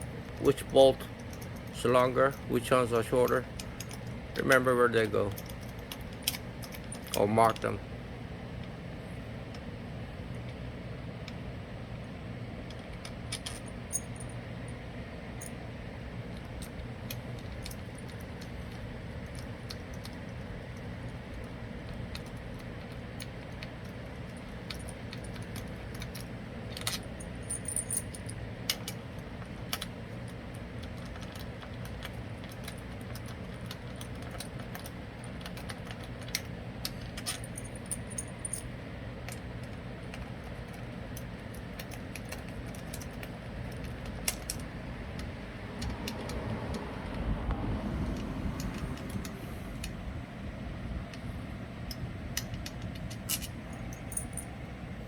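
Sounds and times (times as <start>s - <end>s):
steady low hum: 0.0s - 55.0s
metal tools clinking: 0.1s - 7.8s, 52.4s - 54.6s.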